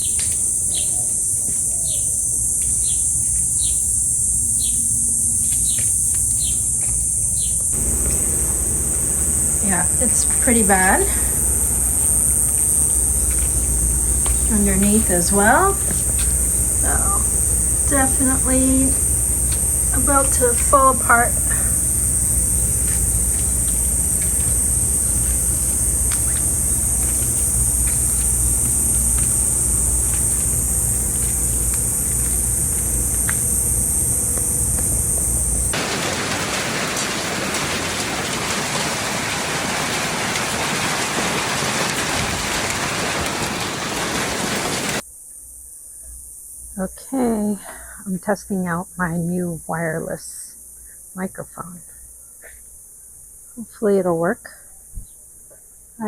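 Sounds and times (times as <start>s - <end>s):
insects droning: 0.0s - 56.0s
bird chirping: 7.4s - 34.4s
low background rumble: 7.7s - 35.8s
faint ticks: 11.2s - 15.0s, 15.8s - 35.8s.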